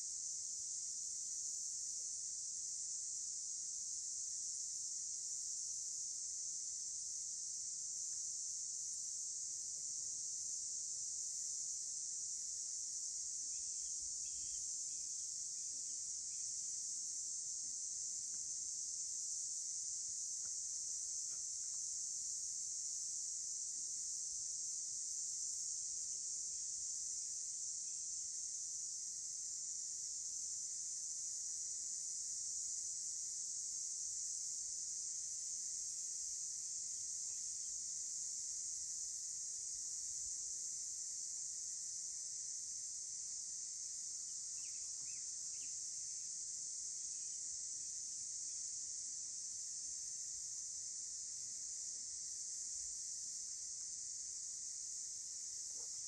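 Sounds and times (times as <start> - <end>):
high-pitched insect chorus: 0.1 - 56.0
faint chirps: 13.6 - 15.0, 44.5 - 45.8.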